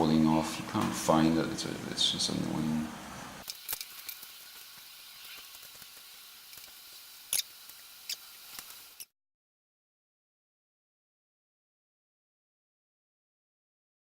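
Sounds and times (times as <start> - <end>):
faint steady hiss: 0.0 - 9.1.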